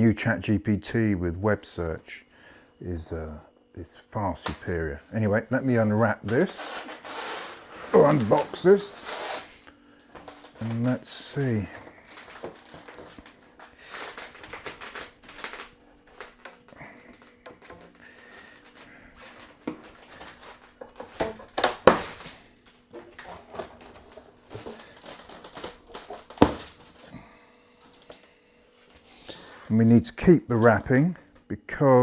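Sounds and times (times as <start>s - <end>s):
plastic wrapping crinkling: 5.2s - 27.2s.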